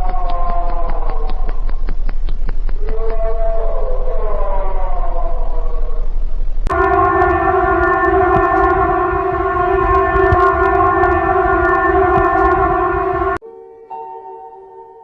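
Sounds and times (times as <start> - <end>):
low rumbling noise: 3.2 - 13.4
falling siren tone: 6.7 - 13.4
warning siren steady tone: 6.7 - 13.4.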